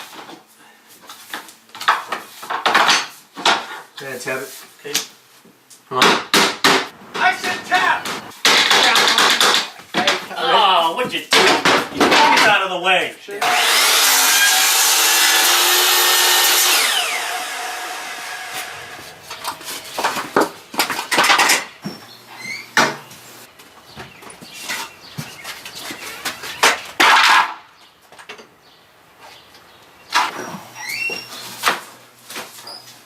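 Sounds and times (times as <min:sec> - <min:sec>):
power tool motor winding down: 0:13.4 - 0:19.2.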